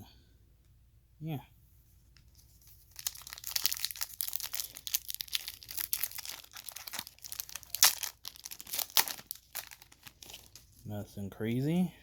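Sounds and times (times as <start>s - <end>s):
foil wrapper crinkling and tearing: 2.6s - 10.8s.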